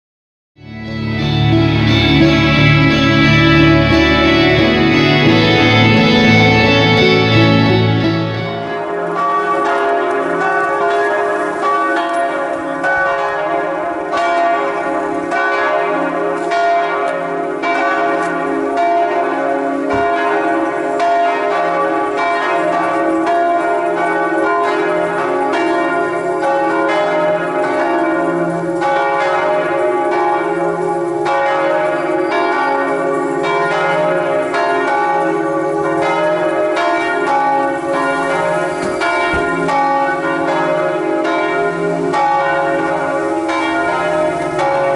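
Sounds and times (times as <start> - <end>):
church bells pealing: 0.6 - 44.9.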